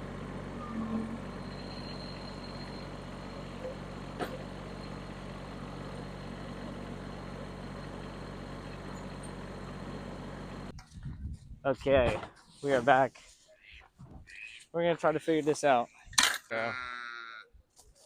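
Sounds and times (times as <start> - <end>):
tractor diesel engine running: 0.0 - 10.8.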